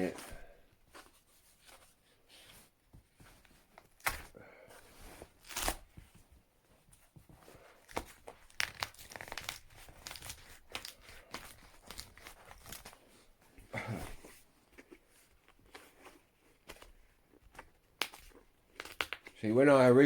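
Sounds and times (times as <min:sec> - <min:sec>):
packaging being torn and crinkled: 0:05.4 - 0:05.8, 0:07.8 - 0:13.0, 0:17.9 - 0:19.4.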